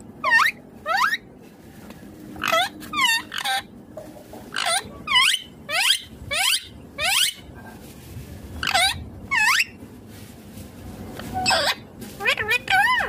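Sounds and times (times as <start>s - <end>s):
parakeet squawking: 0.2s - 1.3s, 2.4s - 3.7s, 4.5s - 7.5s, 8.6s - 9.8s, 11.4s - 13.0s.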